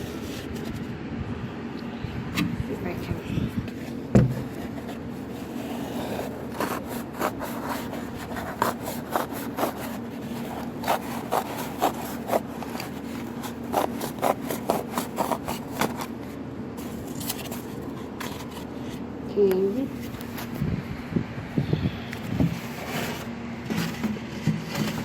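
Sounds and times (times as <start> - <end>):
steady low hum: 0.0 - 25.0
blade cutting styrofoam cups: 4.2 - 16.2.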